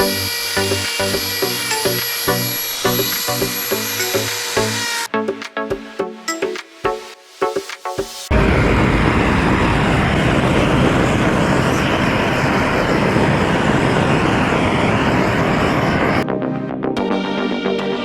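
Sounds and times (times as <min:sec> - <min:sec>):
power tool cutting wood: 0:00.0 - 0:05.1.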